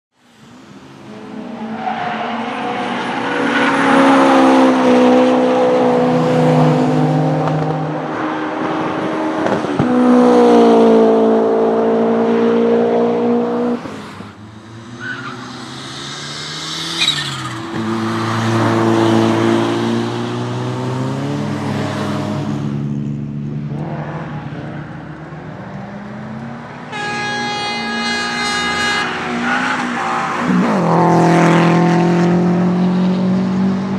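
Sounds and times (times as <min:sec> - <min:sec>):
race cars revving past: 0:00.5 - 0:33.9.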